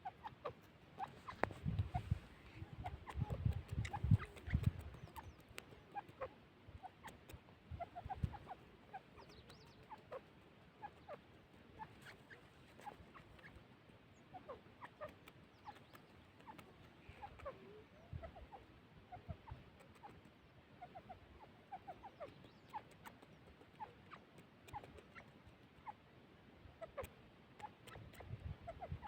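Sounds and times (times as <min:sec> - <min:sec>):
bird chirps and clucks: 0:00.0 - 0:29.0.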